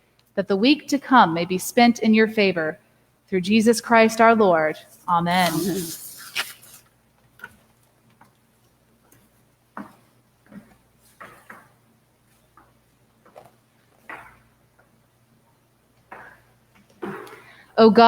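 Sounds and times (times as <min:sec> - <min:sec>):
small knocks and rustles: 0:09.0 - 0:15.0.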